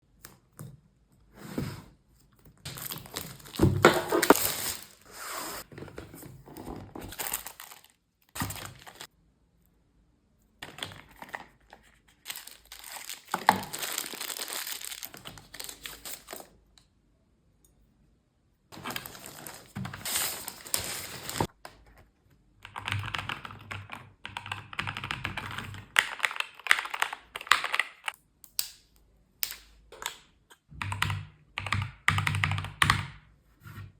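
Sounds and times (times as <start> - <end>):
paper and plastic crinkling: 2.6 - 9.1, 10.6 - 16.5, 18.7 - 21.5.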